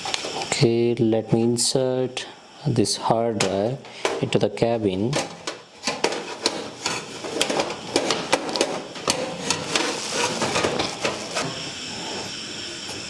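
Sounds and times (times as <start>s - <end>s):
metal clicks and rattles: 5.1s - 11.6s.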